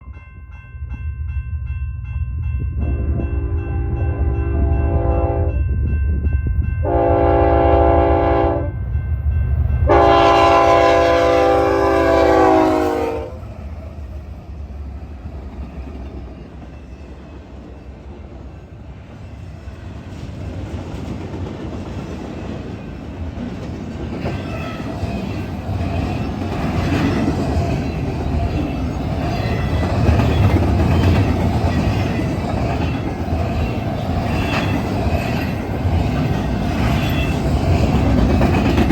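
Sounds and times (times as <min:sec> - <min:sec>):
locomotive horn blasts: 0:03.1 - 0:05.6, 0:06.8 - 0:08.8, 0:09.9 - 0:13.4
train cars clattering on rails: 0:15.2 - 0:38.9.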